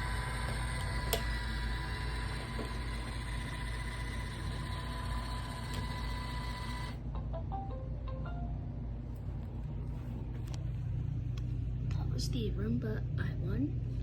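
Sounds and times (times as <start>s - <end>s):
robot vacuum whirring: 0.0s - 7.0s
low hum: 0.0s - 14.0s.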